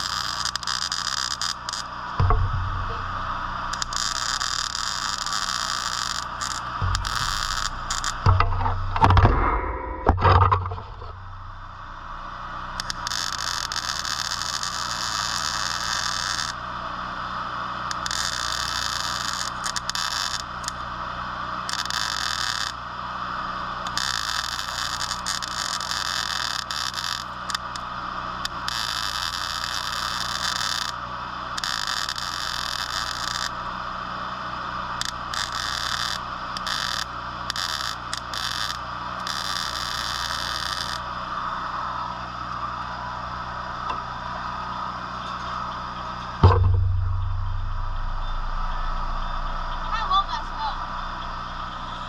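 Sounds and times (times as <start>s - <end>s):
welding arc crackling: 0.0s - 41.6s, 46.2s - 52.0s
steady low hum: 1.6s - 15.0s, 41.0s - 52.0s.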